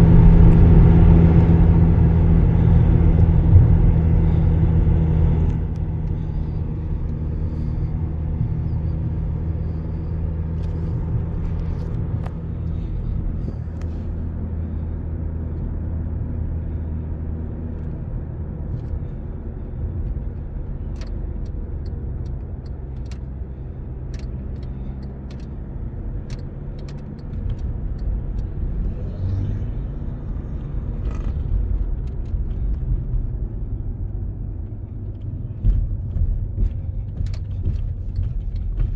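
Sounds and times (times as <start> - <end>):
car engine hum: 0.0 - 38.9
road and tyre rumble: 0.0 - 38.9
light ticks: 24.1 - 25.6, 26.2 - 28.5.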